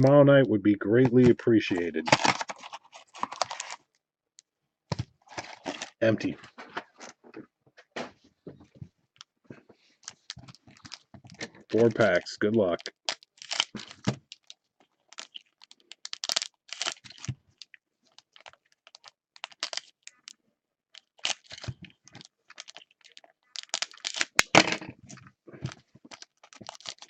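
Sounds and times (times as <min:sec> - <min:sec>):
packaging crinkling and tearing: 0:01.7 - 0:03.8, 0:05.2 - 0:06.0, 0:10.0 - 0:20.4, 0:21.0 - 0:27.0.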